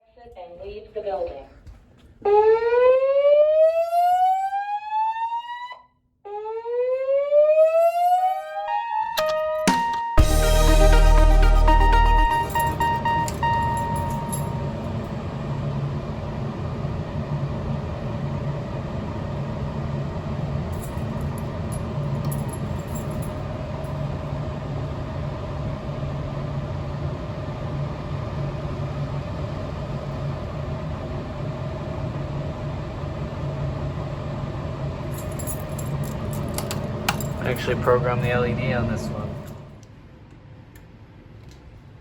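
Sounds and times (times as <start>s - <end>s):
steady high tone: 8.2s - 15.4s
low mechanical hum: 10.8s - 42.0s.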